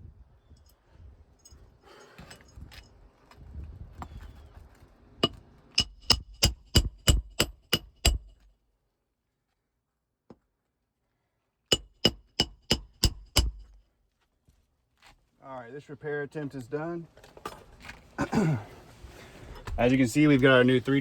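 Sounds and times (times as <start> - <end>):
hammer driving nails into shingle: 5.2 - 8.5, 11.7 - 13.8.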